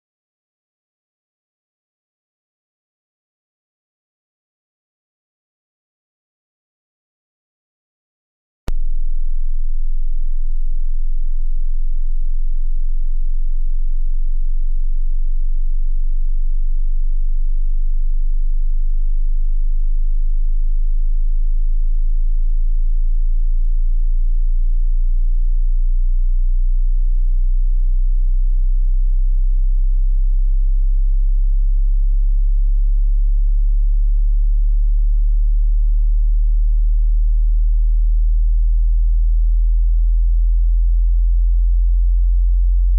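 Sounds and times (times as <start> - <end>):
very low sine test tone: 8.7 - 42.9.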